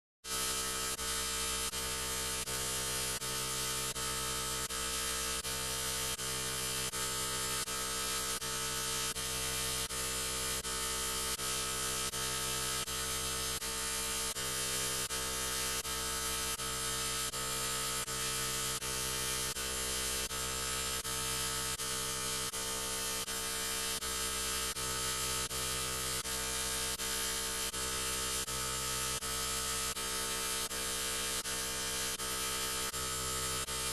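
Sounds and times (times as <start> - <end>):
harsh electronic buzz: 0.3 - 33.9.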